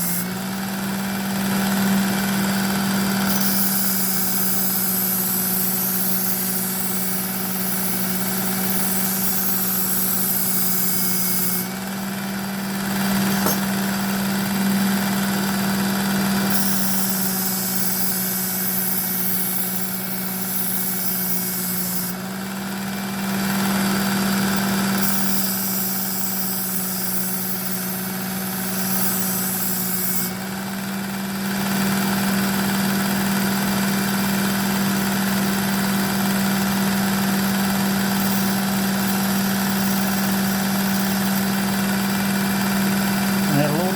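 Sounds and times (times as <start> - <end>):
belt sharpener running: 0.0 - 43.9
knife grinding on belt: 3.3 - 11.8, 13.0 - 13.9.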